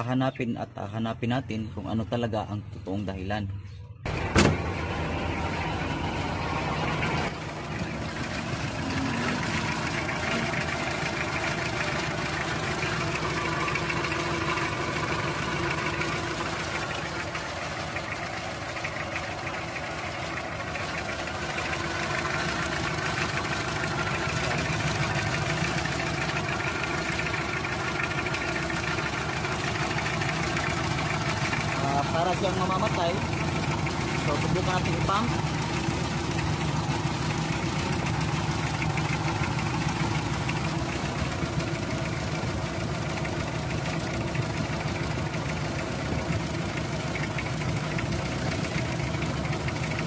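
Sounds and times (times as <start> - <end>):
diesel engine idling roughly: 3.6 - 50.0.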